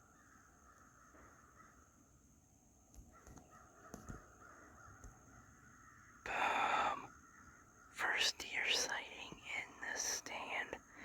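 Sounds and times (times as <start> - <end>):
distant crows cawing: 0.0 - 2.0, 3.1 - 7.9.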